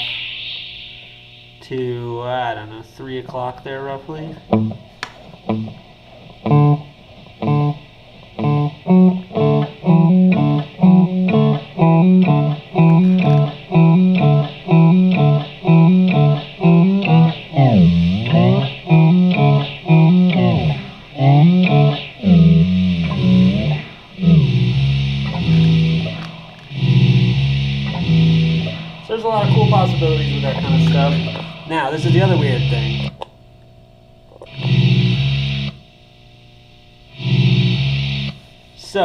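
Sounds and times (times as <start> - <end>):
electric guitar with delay: 4.2 - 33.3, 34.4 - 35.8.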